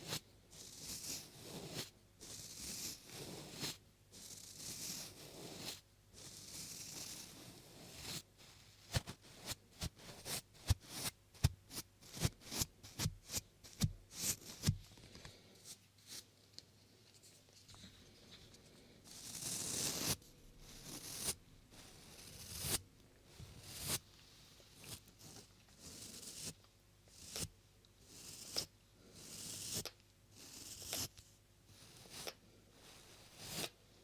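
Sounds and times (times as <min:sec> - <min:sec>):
scratchy rubbing on microphone: 0:00.0 - 0:08.2, 0:19.1 - 0:22.8.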